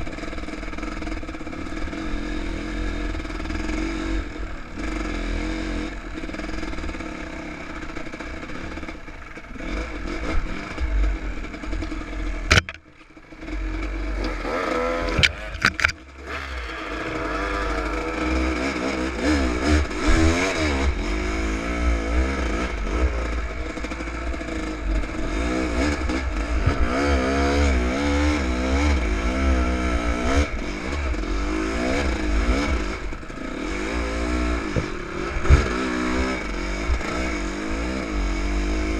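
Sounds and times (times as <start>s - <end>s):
dirt bike engine revving: 0.0s - 38.9s
sharp knocks: 12.5s - 12.9s, 34.7s - 35.8s.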